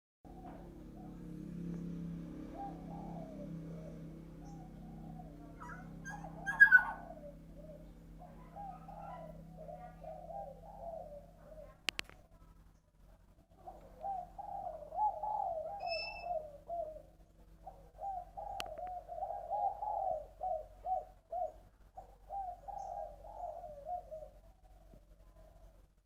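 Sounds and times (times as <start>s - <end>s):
dove cooing: 0.3s - 12.6s, 13.4s - 25.9s
high chirp: 1.1s - 10.6s, 15.8s - 16.4s.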